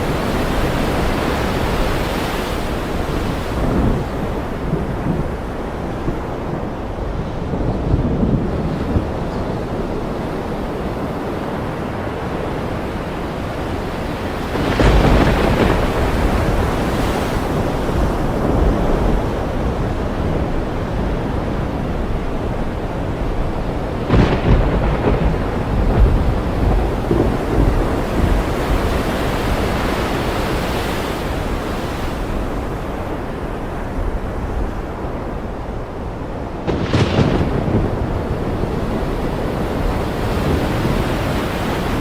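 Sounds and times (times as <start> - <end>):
thunder cracking and rumbling: 0.0 - 12.0, 13.2 - 30.7, 32.2 - 42.0
rain: 0.0 - 42.0
surf: 0.0 - 42.0.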